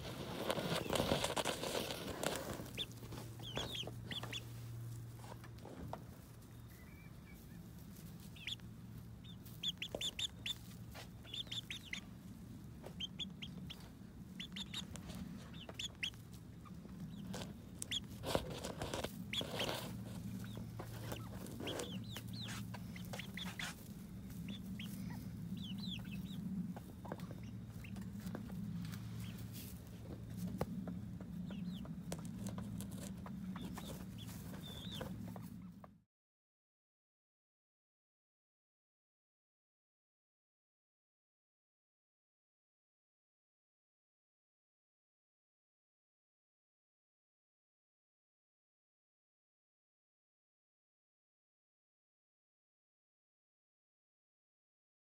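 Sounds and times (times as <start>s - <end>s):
chickens clucking: 0.0s - 36.0s
steady low hum: 0.0s - 36.0s.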